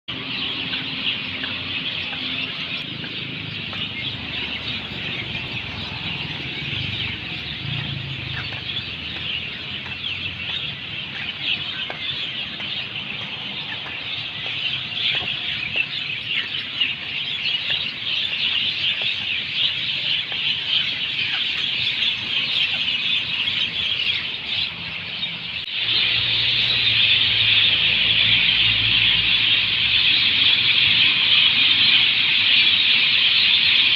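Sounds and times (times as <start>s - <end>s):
small birds chirping: 0.1s - 33.9s.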